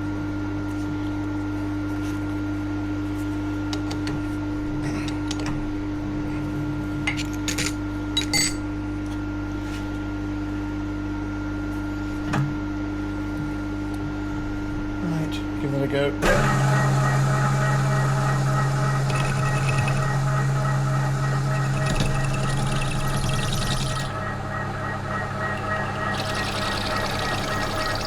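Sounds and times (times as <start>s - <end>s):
milling machine motor humming: 16.2s - 28.0s.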